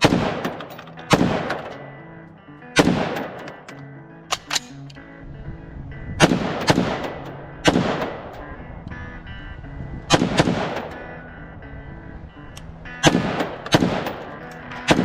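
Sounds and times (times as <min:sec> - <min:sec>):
rifle shots with echo: 0:00.0 - 0:02.0, 0:02.7 - 0:04.8, 0:06.2 - 0:08.6, 0:10.1 - 0:11.1, 0:13.0 - 0:15.0
background music: 0:00.0 - 0:15.0.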